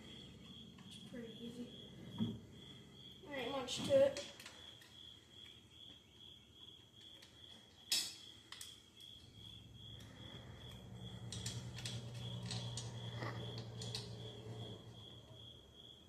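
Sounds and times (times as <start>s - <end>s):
crickets chirping: 0.0s - 16.0s
tools clinking: 7.0s - 9.1s, 11.1s - 14.3s.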